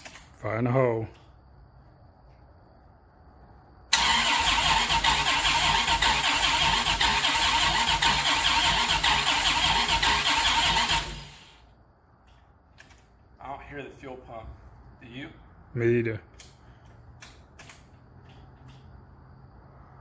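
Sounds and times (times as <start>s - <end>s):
car starter cranking engine: 3.9s - 11.6s.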